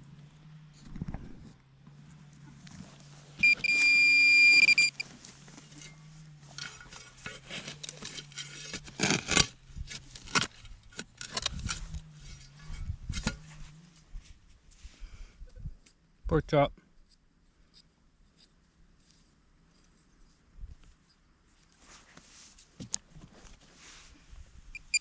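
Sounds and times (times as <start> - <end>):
digging in soil and grass: 2.6 - 15.0
metal detector tone: 3.4 - 5.1, 24.8 - 25.0.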